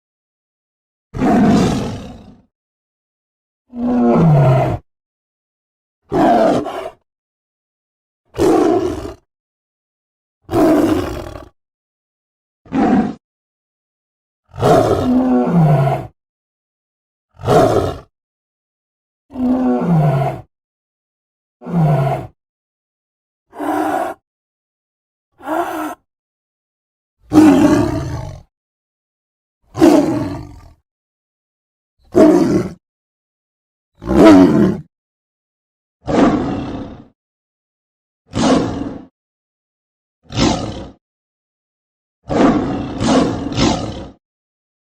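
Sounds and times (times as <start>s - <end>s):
cartoon tiger roars: 1.1s - 2.5s, 3.7s - 4.9s, 6.0s - 7.0s, 8.3s - 9.3s, 10.4s - 11.6s, 12.7s - 13.2s, 14.4s - 16.2s, 17.3s - 18.1s, 19.3s - 20.5s, 21.6s - 22.4s, 23.5s - 24.2s, 25.4s - 26.1s, 27.2s - 28.5s, 29.7s - 30.8s, 32.0s - 32.8s, 34.0s - 34.9s, 36.0s - 37.2s, 38.3s - 39.1s, 40.2s - 41.0s, 42.2s - 44.2s.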